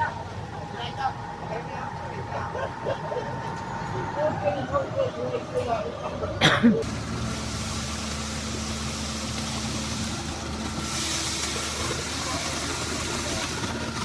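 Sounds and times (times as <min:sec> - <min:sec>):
concrete mixer engine running: 0:04.9 - 0:14.0
hiss: 0:06.8 - 0:14.0.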